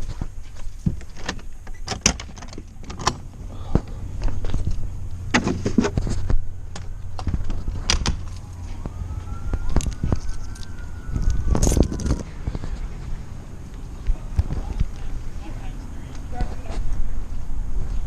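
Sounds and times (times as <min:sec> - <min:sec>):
low steady rumble: 0:00.1 - 0:18.0
faint siren wailing: 0:06.3 - 0:16.0.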